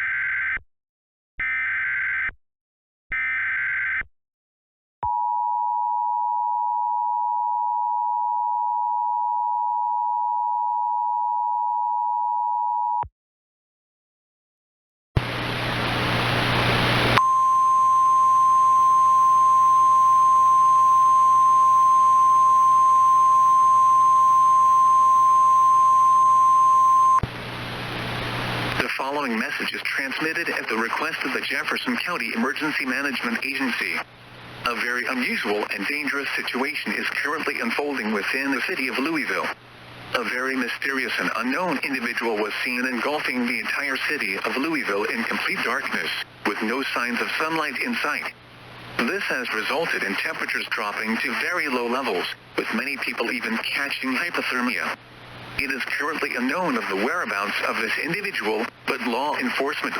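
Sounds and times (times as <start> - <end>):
static with low hum: 15.2 - 59.9
two-tone attention signal: 17.2 - 27.2
single steady tone: 17.2 - 27.3.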